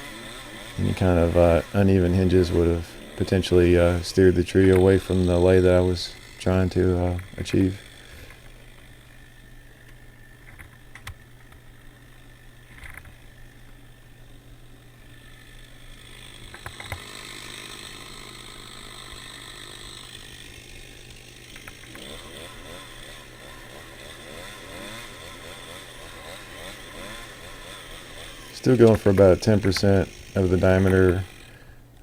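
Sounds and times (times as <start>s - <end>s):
chainsaw cutting wood: 0.0s - 32.0s
sharp clicks: 9.8s - 11.7s, 16.4s - 17.1s, 21.5s - 22.1s, 28.8s - 32.0s.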